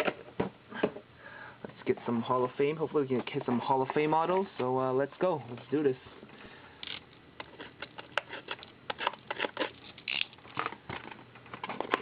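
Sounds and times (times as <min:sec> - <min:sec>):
packaging clicks and crinkles: 0:06.8 - 0:12.0.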